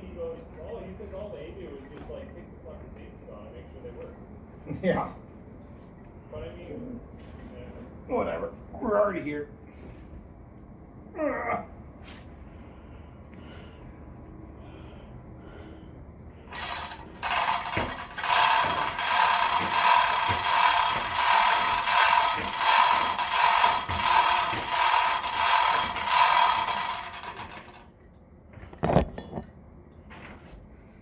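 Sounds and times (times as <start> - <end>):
machinery rhythmic rattling whir: 16.5 - 28.2.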